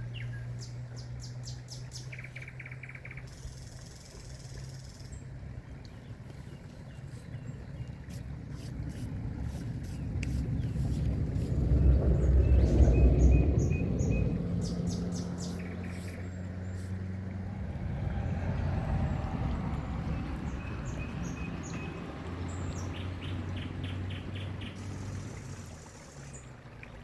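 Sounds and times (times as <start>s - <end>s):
small birds chirping: 0.0s - 17.0s, 20.0s - 26.5s
steady low hum: 0.0s - 26.8s
low rumble: 8.4s - 23.4s.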